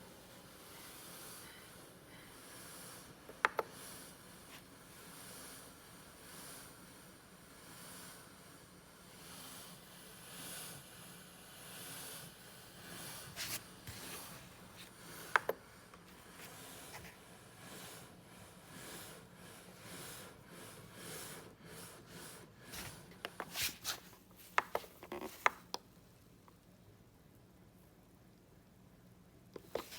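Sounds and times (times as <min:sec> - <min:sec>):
faint steady hiss: 0:00.0 - 0:19.4, 0:22.4 - 0:29.9.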